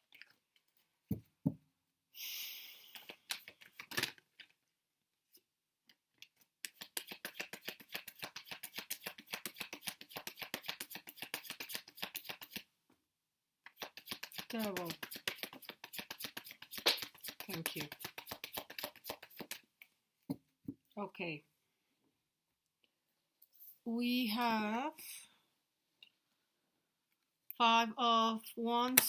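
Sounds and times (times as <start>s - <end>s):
cards being shuffled: 2.9s - 4.2s, 6.7s - 12.7s, 13.7s - 19.6s.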